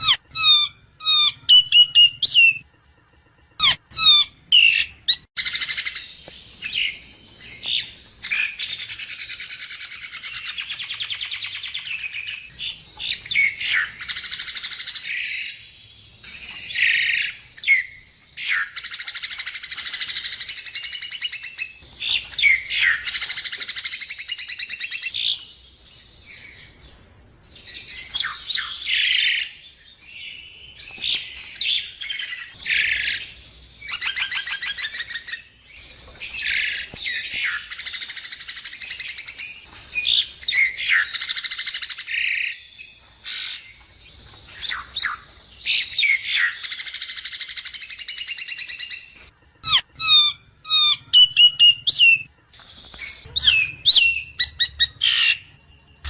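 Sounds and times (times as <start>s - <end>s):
myna chattering and whistling: 3.6s - 6.0s.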